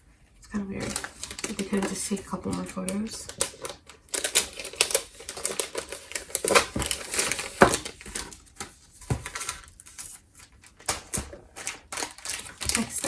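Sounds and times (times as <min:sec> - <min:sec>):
paper pages rustling and flipping: 0:00.8 - 0:13.0.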